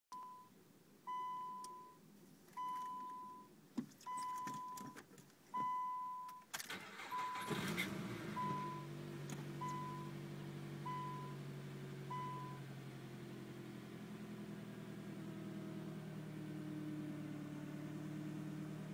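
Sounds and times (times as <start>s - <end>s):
dashboard warning chime beeping: 0.1s - 0.5s, 1.1s - 2.0s, 2.6s - 3.5s, 4.1s - 5.0s, 5.6s - 7.7s, 8.3s - 8.9s, 9.6s - 10.2s, 10.8s - 11.4s, 12.1s - 12.6s
car engine cranking and idling: 6.4s - 18.9s.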